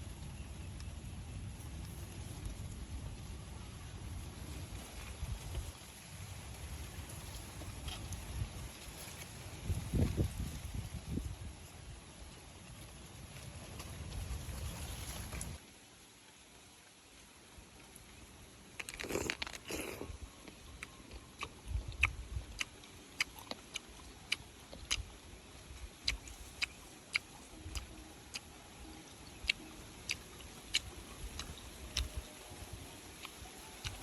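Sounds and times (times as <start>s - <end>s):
crisp crunch: 18.8s - 21.5s.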